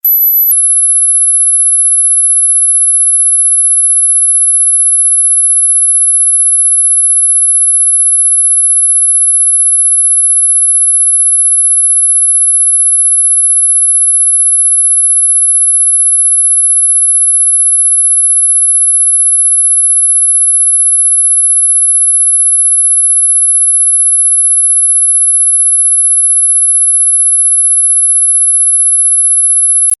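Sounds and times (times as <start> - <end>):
high-pitched pure tone: 0.0 - 1.0.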